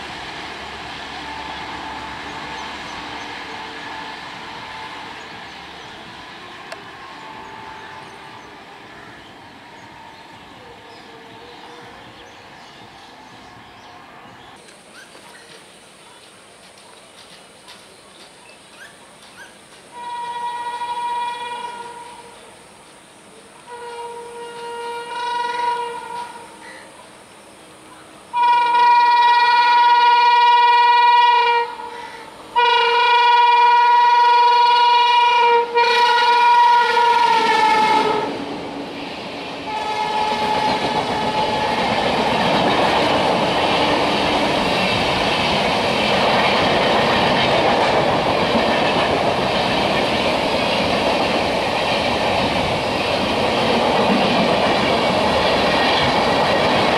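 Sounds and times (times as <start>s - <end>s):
train wheels rattling on rails: 0.0s - 27.2s, 28.4s - 56.9s
train horn blasts: 1.0s - 5.4s, 6.6s - 12.1s, 19.9s - 22.5s, 23.6s - 26.8s, 28.3s - 38.4s, 39.7s - 42.0s.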